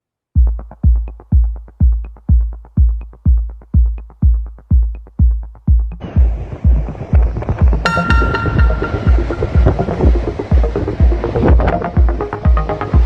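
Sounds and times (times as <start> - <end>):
hi-hat ticks: 0.4 - 6.0
heavy kick drum: 0.4 - 9.8
steady rushing noise: 7.9 - 11.3.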